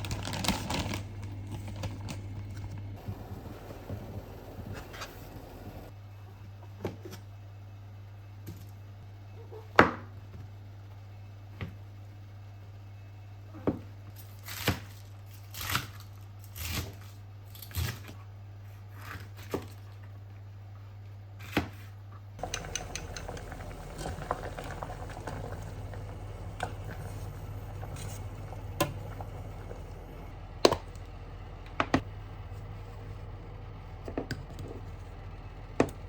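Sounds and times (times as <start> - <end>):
steady low hum: 1.2 - 6.3, 22.4 - 36.0.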